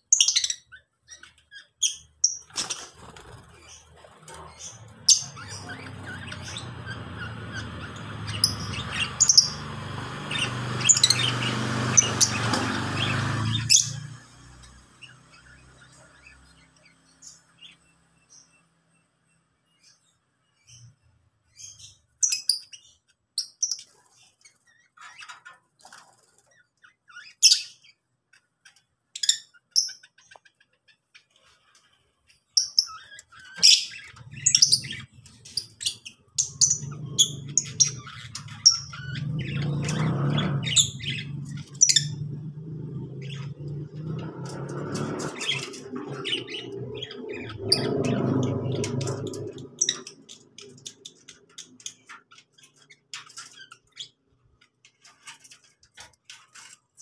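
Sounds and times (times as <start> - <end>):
lovebirds chirping and squawking: 0.0 - 57.0.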